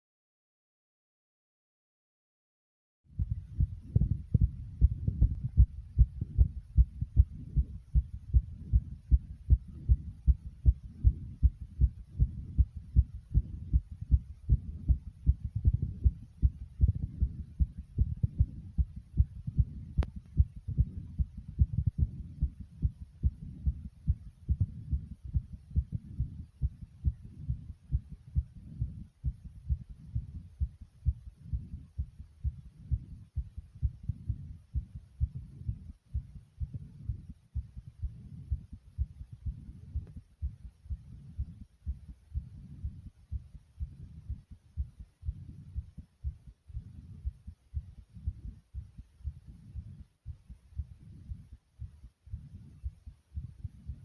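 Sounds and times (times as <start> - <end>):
heart beating fast: 3.1 - 54.0.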